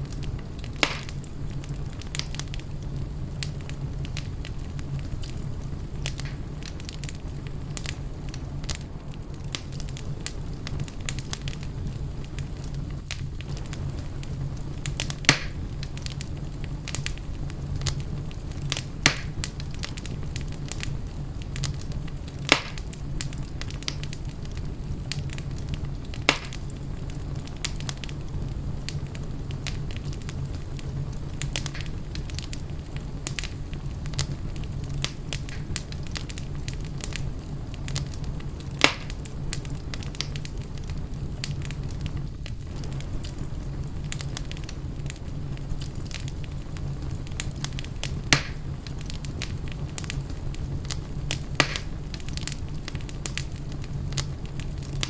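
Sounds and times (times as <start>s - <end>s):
fire crackling: 0.0s - 55.0s
fire popping: 0.0s - 55.0s.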